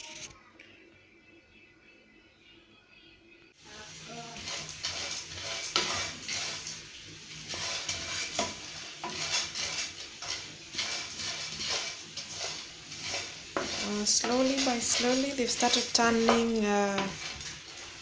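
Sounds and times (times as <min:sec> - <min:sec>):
seeds sizzling in a pan: 0:03.6 - 0:18.0
utensil scraping a pan: 0:04.1 - 0:18.0.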